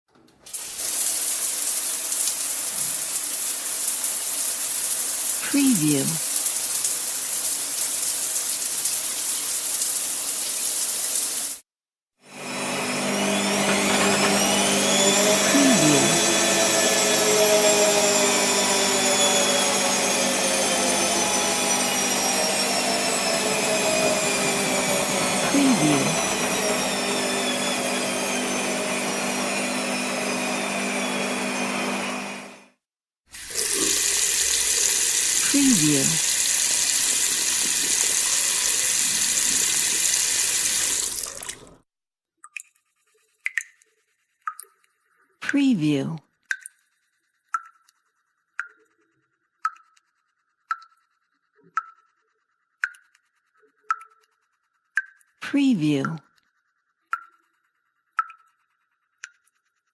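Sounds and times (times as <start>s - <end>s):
washing machine motor whine: 12.3s - 32.8s, 33.4s - 41.8s
faucet dripping: 33.3s - 41.8s, 42.4s - 42.8s, 43.4s - 44.9s, 46.5s - 46.9s, 47.5s - 48.0s, 49.6s - 50.0s, 50.7s - 51.1s, 51.7s - 52.1s, 53.9s - 54.3s, 58.2s - 58.6s.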